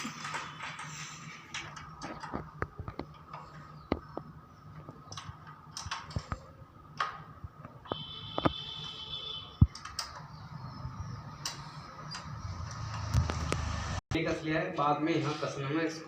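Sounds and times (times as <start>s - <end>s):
metal parts clicking and tapping: 0.0s - 9.0s, 9.6s - 10.3s, 11.4s - 13.2s.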